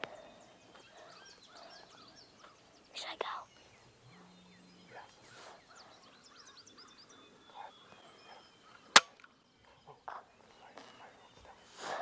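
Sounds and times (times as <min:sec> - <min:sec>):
distant turkey calling: 0:00.0 - 0:12.0
songbirds chirping: 0:00.0 - 0:12.0.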